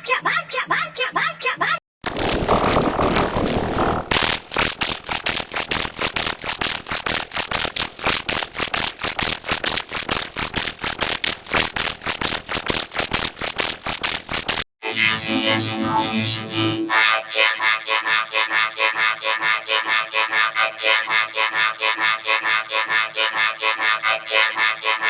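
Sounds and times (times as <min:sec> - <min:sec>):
rattling stutter of noisy hits: 0:02.0 - 0:14.7.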